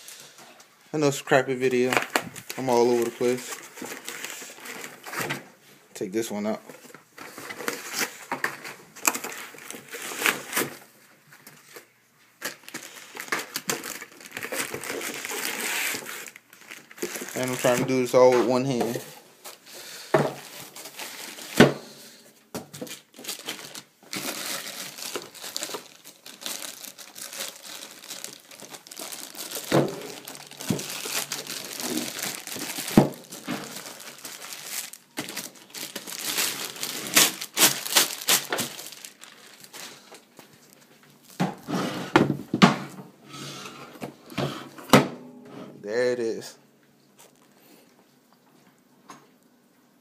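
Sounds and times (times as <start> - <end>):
packaging crinkling: 1.6 - 5.2, 6.8 - 19.7, 20.4 - 21.6, 22.7 - 41.4, 47.2 - 47.6.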